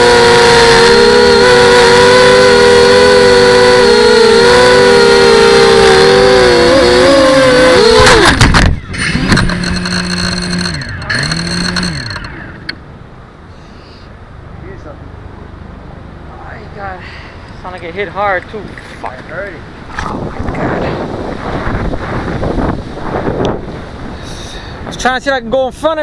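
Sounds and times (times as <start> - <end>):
quadcopter motors whining: 0.0 - 12.8
low humming tones: 0.0 - 24.3
crash clatter: 8.0 - 12.6.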